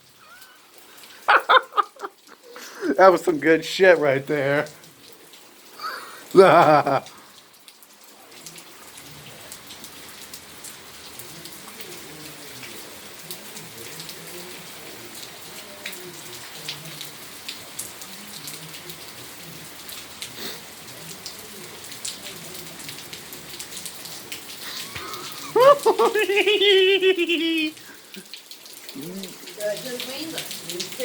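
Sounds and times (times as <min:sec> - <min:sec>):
rain patter: 0:00.0 - 0:31.0
hailstones ticking on hard surfaces: 0:27.8 - 0:31.0.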